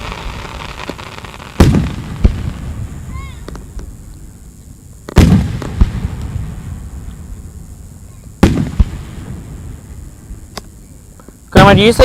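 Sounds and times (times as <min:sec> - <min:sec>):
firework shells bursting: 0:00.0 - 0:04.0, 0:05.0 - 0:07.5
smaller firework bang: 0:00.7 - 0:03.9, 0:05.1 - 0:06.8, 0:08.4 - 0:09.6.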